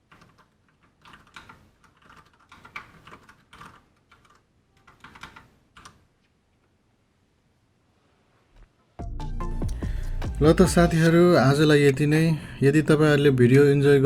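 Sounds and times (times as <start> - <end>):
mechanical keyboard typing: 0.0 - 6.0.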